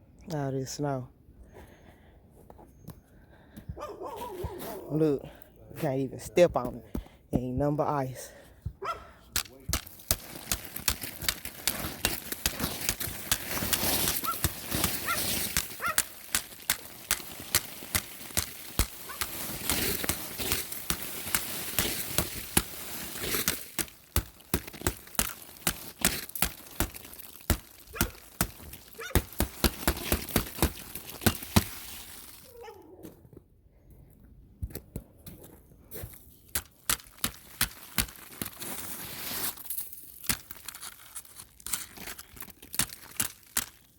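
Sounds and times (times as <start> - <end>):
footsteps crunching on icy snow: 8.8 - 32.6, 34.1 - 43.9.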